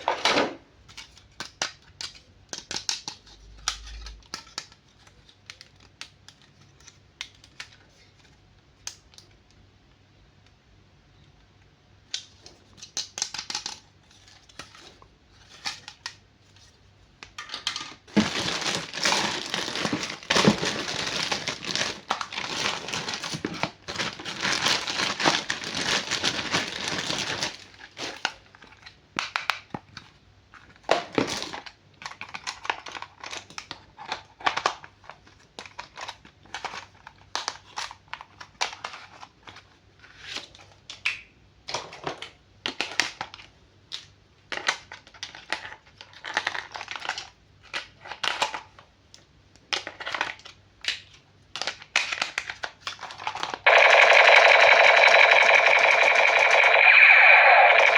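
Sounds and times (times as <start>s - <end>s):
packaging crinkling: 18.1s - 28.0s.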